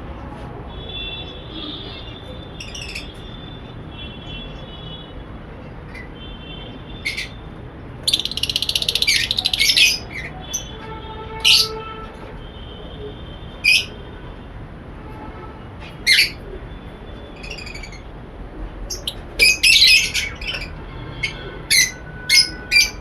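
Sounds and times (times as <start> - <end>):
birds chirping: 1.7 - 3.4, 8.0 - 10.8, 18.9 - 23.0
sharp loud bird calls: 1.8 - 3.4, 8.0 - 10.7, 18.9 - 23.0
rapid bird chattering: 8.0 - 10.7.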